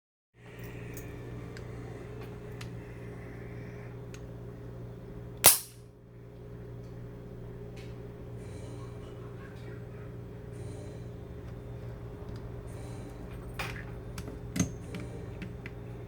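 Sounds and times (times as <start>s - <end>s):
pistol action snapping: 5.5s - 5.8s.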